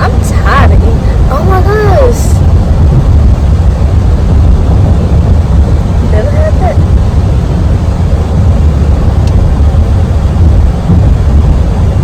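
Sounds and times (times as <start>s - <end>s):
road and engine noise in car: 0.0s - 12.0s.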